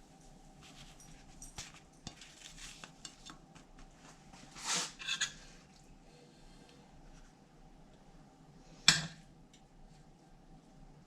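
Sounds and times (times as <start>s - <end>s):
dish scraping: 4.6s - 5.4s.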